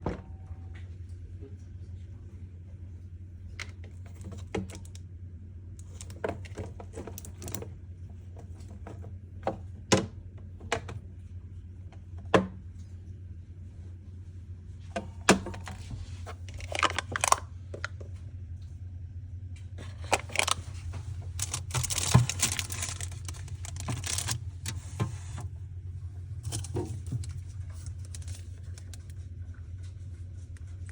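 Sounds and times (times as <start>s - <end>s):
steady low hum: 0.0s - 30.9s
packaging rustling: 15.6s - 17.4s, 19.8s - 25.4s, 26.4s - 29.1s.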